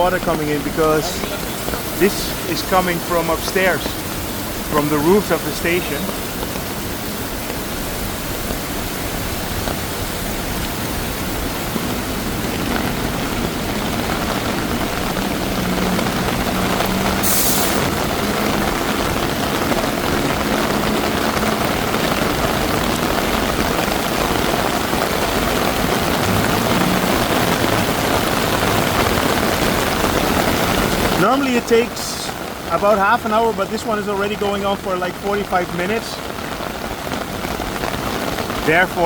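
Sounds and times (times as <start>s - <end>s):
road traffic passing: 0.0s - 33.8s
heavy rain hissing: 0.0s - 39.0s
running water: 0.0s - 39.0s
short sharp hiss: 17.2s - 17.9s.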